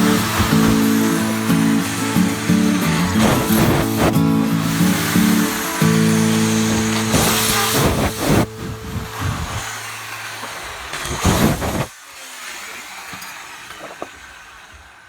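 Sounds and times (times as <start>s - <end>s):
loud surge of noise: 0.0s - 11.9s
electric power tool motor hum: 0.0s - 15.0s.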